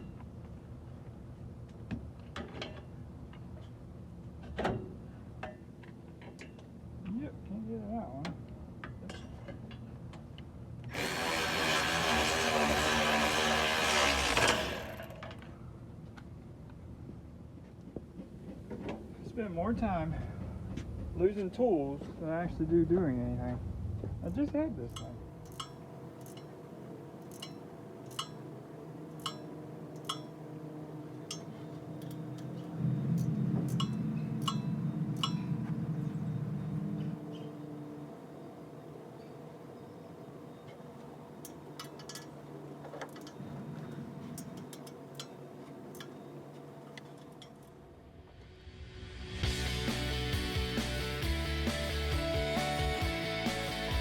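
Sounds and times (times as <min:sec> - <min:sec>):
power tool motor running: 0:10.9 - 0:15.4
steady low hum: 0:14.8 - 0:52.4
metallic ticks with a ring: 0:24.9 - 0:26.6, 0:27.2 - 0:28.5, 0:29.1 - 0:30.4, 0:31.2 - 0:35.6, 0:44.4 - 0:46.2
light tool clicks: 0:29.1 - 0:30.3.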